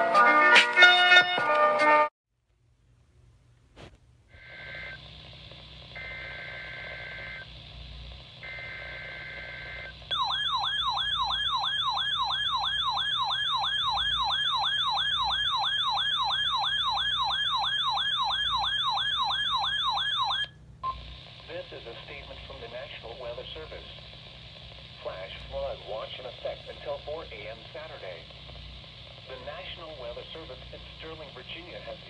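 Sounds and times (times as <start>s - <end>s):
buzzy digital data bursts: 4.4s - 10.3s.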